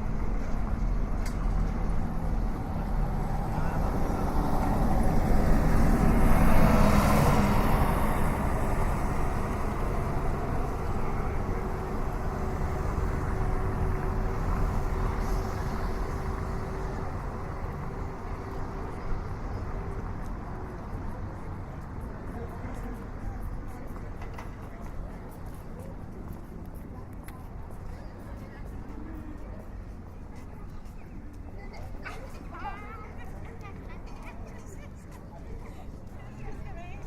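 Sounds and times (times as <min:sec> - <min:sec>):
street traffic: 0:00.0 - 0:37.0
vehicle passing close by: 0:02.1 - 0:20.0.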